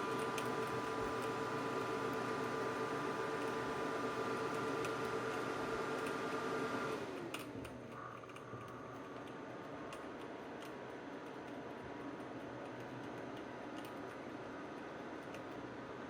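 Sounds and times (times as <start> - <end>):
computer fan whining: 0.0 - 16.0
fan hum with faint ticks: 0.0 - 16.0
click: 6.0 - 6.2, 7.2 - 11.6, 12.5 - 14.2, 14.8 - 15.6.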